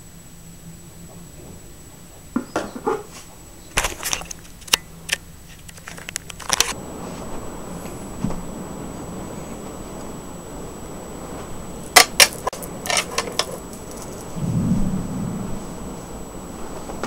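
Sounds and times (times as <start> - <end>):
storm wind rushing: 6.8 - 17.0.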